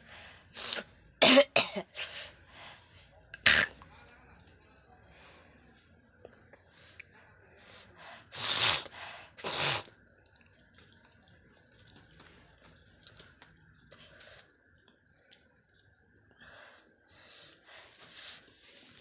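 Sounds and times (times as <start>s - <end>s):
faint breaths: 0.0s - 1.2s, 1.9s - 3.3s, 4.9s - 9.6s, 16.3s - 19.0s
person spitting: 3.4s - 3.8s, 8.4s - 9.9s.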